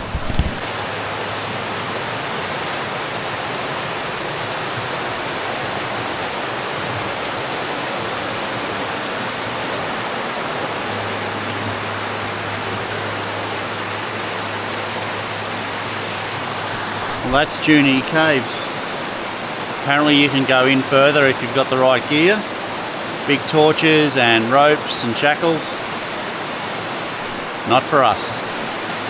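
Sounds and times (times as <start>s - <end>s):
river water rushing: 0.0s - 29.0s.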